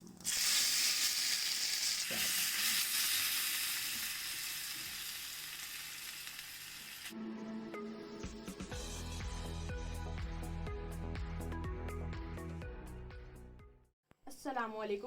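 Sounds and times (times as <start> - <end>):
hot oil sizzling in a pan: 0.1 - 7.1.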